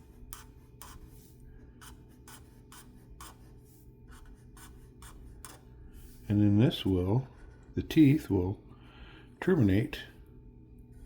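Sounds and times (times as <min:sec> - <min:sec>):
pen scratching on paper: 0:00.0 - 0:06.3.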